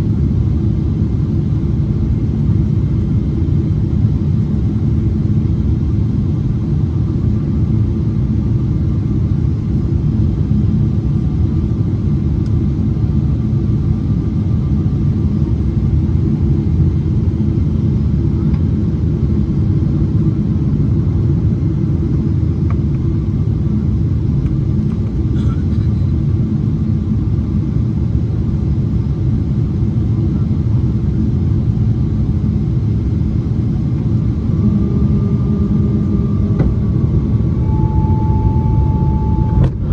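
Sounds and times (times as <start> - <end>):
airplane cabin rumble: 0.0 - 39.9
faint steady whine: 31.1 - 39.9.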